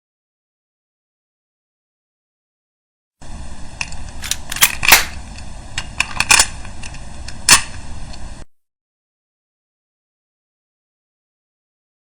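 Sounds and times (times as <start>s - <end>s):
steady hiss and hum: 3.2s - 8.5s
sharp gunshot-like cracks: 4.2s - 5.2s.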